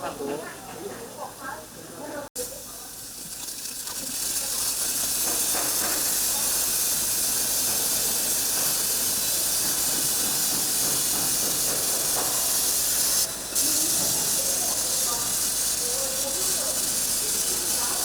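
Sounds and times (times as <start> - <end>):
hiss of rushing air: 5.1 - 18.0.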